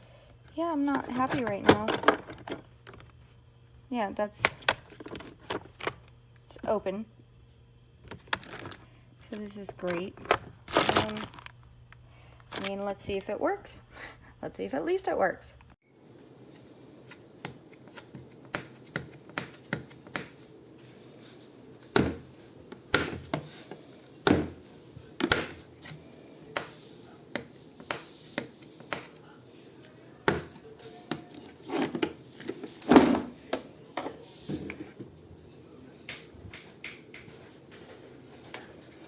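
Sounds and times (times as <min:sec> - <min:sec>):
crickets chirping: 0:15.8 - 0:39.0.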